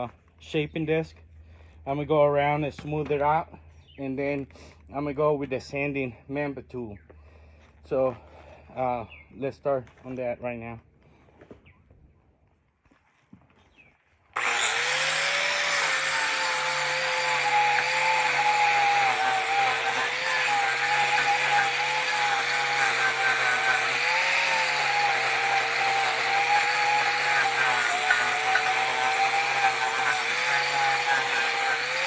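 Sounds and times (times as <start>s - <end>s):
angle grinder shaping wood: 14.4s - 32.0s.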